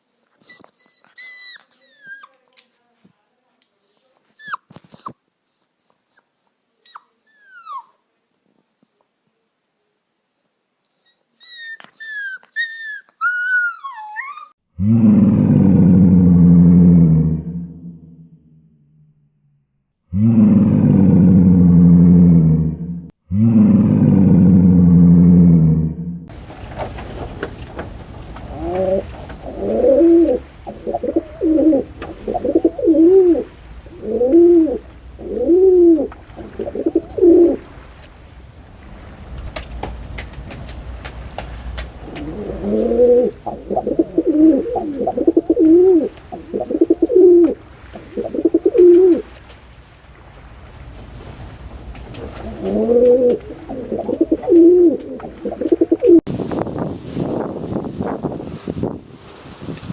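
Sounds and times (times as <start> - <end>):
dog whimpering: 5.9 - 8.0, 11.0 - 14.6
low drawn-out animal call: 13.3 - 19.1, 20.1 - 26.2, 27.4 - 38.0, 42.0 - 49.4, 52.1 - 56.2
pigeon cooing: 26.3 - 38.1, 39.4 - 49.6, 51.2 - 56.3.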